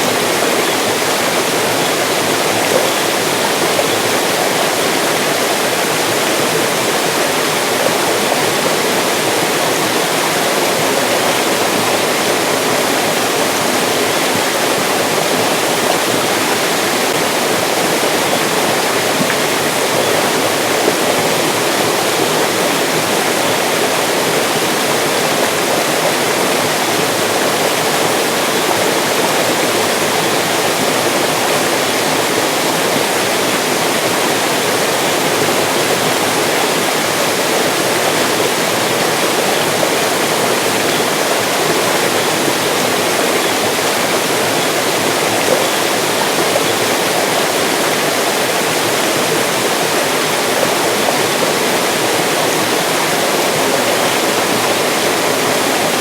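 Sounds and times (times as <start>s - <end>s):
stream rushing over rocks: 0.0s - 56.0s.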